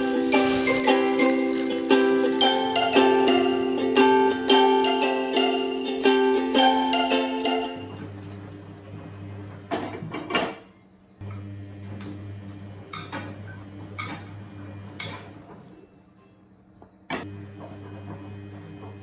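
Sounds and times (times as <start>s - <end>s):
background music: 0.0s - 8.3s
dishes and utensils clinking: 0.0s - 8.7s.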